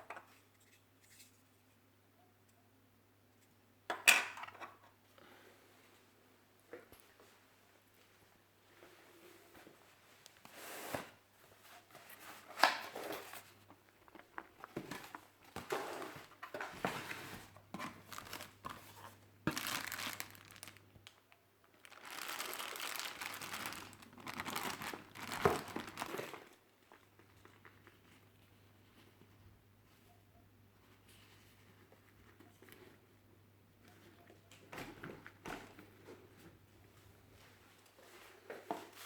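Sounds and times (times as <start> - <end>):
packaging crinkling and rustling: 12.0 - 28.2.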